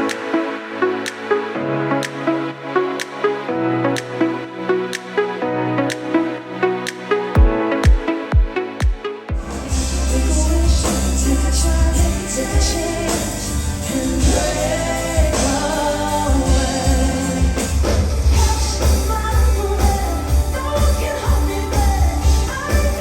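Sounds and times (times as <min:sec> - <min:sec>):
pop song with singing: 0:00.0 - 0:23.0
heavy bass line: 0:09.3 - 0:20.8.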